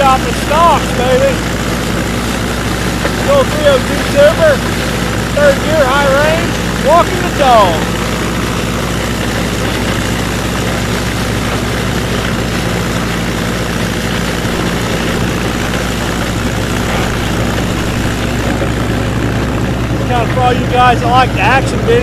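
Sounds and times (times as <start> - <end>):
flail chopper whirring: 0.0 - 20.8
tractor engine under load: 0.0 - 22.0.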